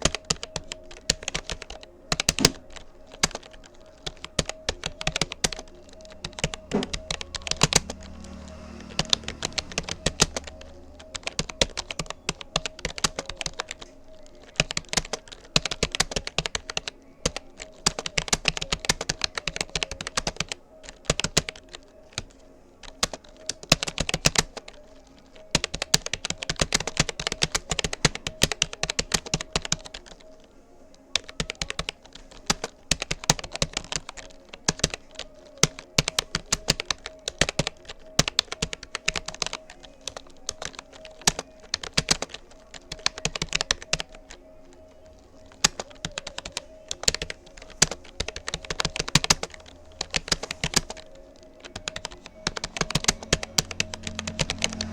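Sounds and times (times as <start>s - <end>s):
faint steady hum: 0.0s - 54.9s
keyboard key clicks: 1.1s - 5.6s.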